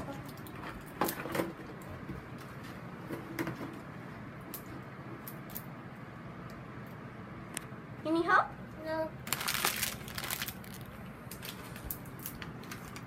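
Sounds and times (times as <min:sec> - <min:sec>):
plastic packaging crinkling: 0:09.2 - 0:13.0.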